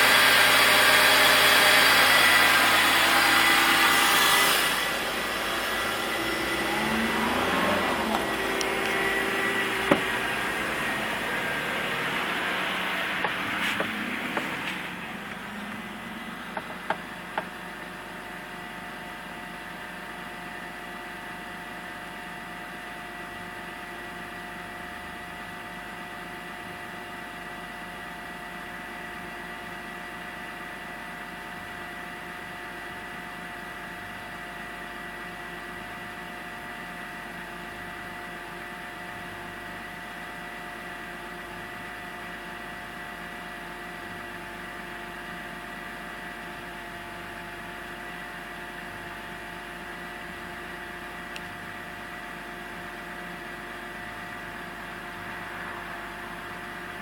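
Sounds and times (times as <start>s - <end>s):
high-pitched whine: 0.0s - 17.3s
car engine running: 0.0s - 29.2s, 33.8s - 57.0s
whirring whine: 0.0s - 57.0s.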